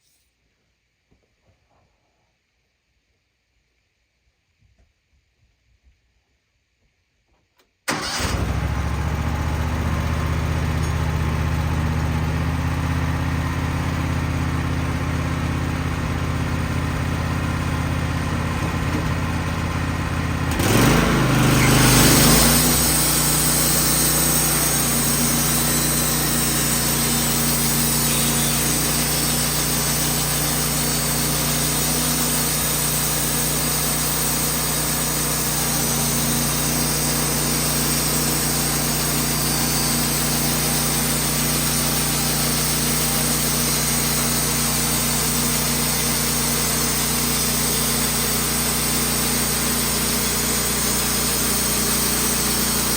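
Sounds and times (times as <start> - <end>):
sawmill engine idling and revving: 7.9 - 52.9
hiss: 22.2 - 52.9.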